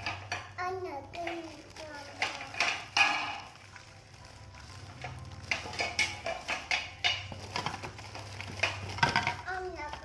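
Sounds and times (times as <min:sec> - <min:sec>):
kitchenware clicking and knocking: 0:00.0 - 0:00.6, 0:02.2 - 0:03.6, 0:05.4 - 0:10.0.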